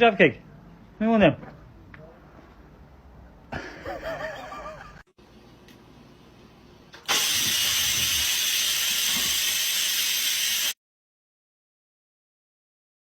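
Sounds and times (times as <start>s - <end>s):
loud steady hiss: 7.1s - 10.8s.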